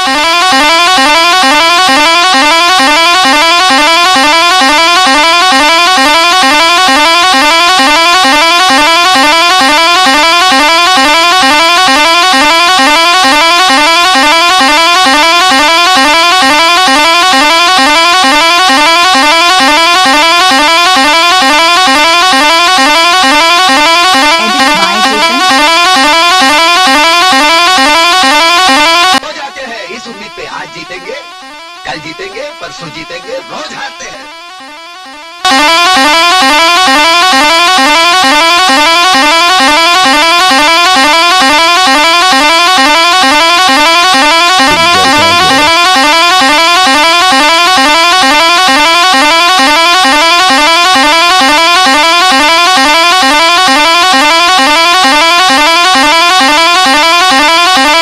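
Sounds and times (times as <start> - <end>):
bus horn warbling: 23.4 - 26.7, 44.3 - 47.2.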